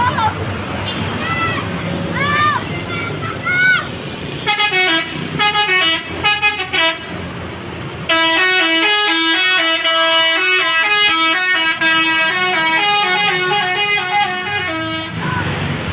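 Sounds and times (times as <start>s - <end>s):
bus musical horn playing tune: 4.4s - 7.2s, 8.0s - 15.3s.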